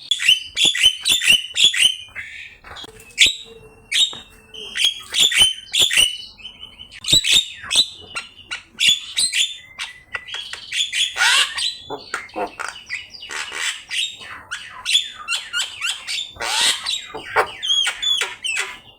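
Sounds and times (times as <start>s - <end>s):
bird singing squawks and whistles: 0.0s - 18.9s.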